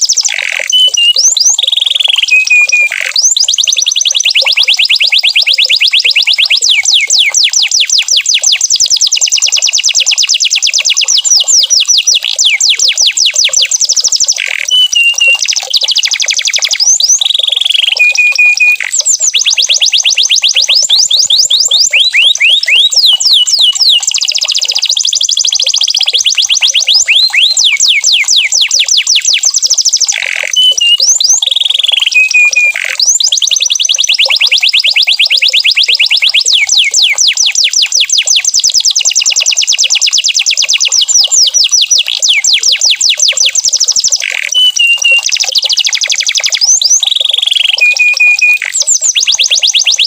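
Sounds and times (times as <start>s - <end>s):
short whistled tones: 0.0s - 3.4s, 14.3s - 24.1s, 29.8s - 33.2s, 43.9s - 50.0s
canary singing trills: 0.0s - 50.0s.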